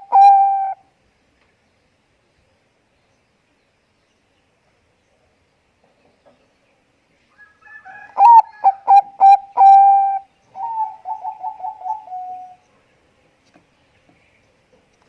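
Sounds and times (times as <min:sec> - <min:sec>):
dove cooing: 0:00.0 - 0:00.8, 0:07.7 - 0:12.6.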